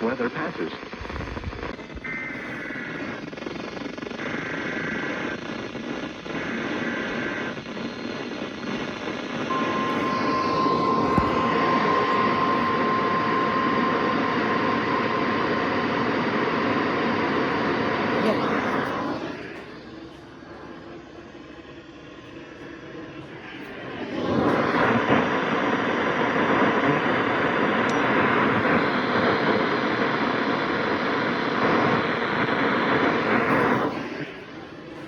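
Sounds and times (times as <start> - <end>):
heavy radio static: 0.0 - 35.0
warbling data bursts: 9.5 - 16.3
steady alarm tone: 9.5 - 19.6.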